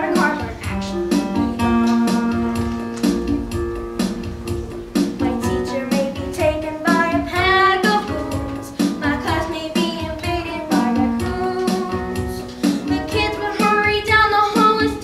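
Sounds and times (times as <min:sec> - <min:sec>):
child singing: 0:00.0 - 0:02.2, 0:05.2 - 0:15.0
struck accompaniment chords: 0:00.0 - 0:14.2.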